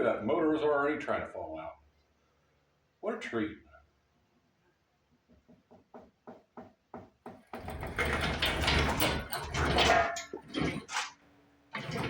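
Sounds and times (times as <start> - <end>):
short evenly spaced knocks: 5.3 - 9.2
loud scraping and rattling: 7.6 - 12.0.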